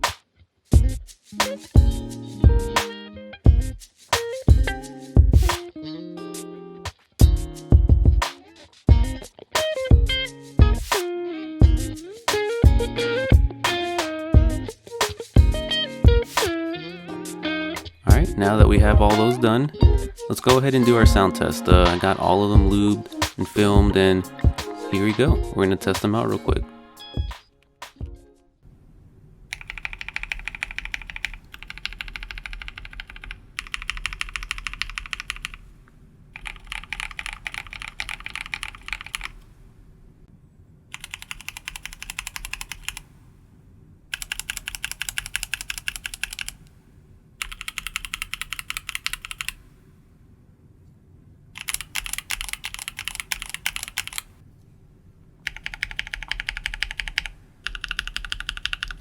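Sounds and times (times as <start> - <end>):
mechanical keyboard typing: 29.5 - 35.6, 36.4 - 39.4, 40.9 - 43.0, 44.1 - 46.6, 47.4 - 49.6, 51.6 - 54.3, 55.4 - 59.0.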